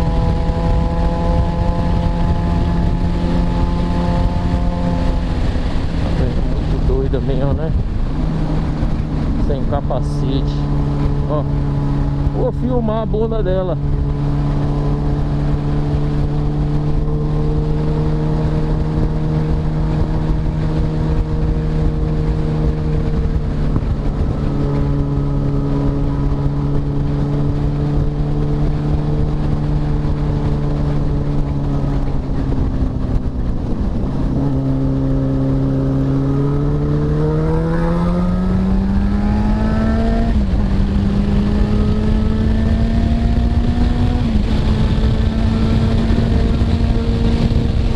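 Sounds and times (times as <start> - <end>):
motorcycle engine running: 0.0 - 47.9
wind rumble on microphone: 0.0 - 47.9.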